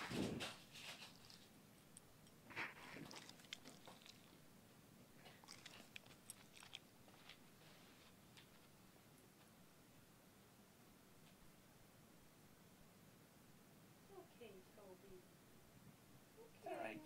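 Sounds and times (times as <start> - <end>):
faint small clicks and crunches: 0.2 - 4.4, 5.2 - 7.5.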